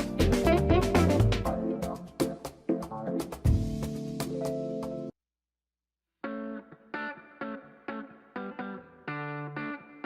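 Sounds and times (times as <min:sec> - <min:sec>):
picked electric guitar notes: 0:00.0 - 0:01.8, 0:06.3 - 0:10.0
background music: 0:00.0 - 0:05.2.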